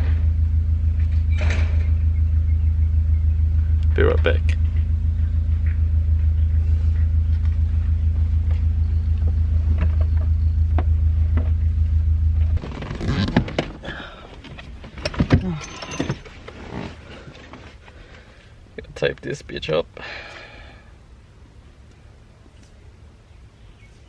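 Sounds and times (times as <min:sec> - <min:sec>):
steady low hum: 0:00.0 - 0:24.0
duct tape unrolling and tearing: 0:12.6 - 0:13.6.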